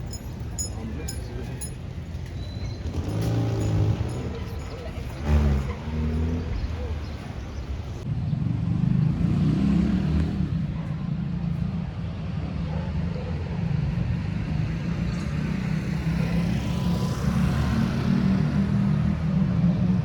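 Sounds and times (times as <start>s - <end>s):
traffic engine rumble: 0.0s - 20.0s.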